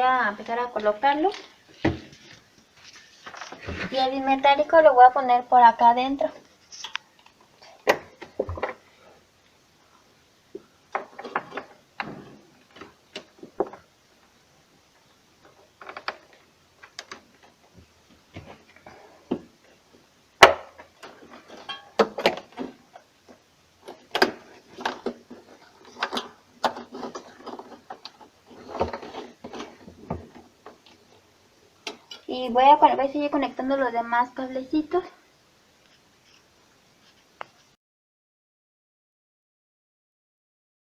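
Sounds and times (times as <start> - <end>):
rustling: 0.2 - 4.8, 20.8 - 32.4, 35.1 - 37.8.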